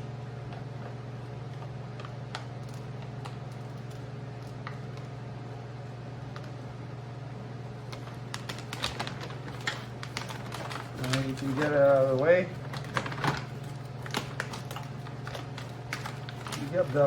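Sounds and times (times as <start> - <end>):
plastic sheet crackling: 7.7 - 17.0.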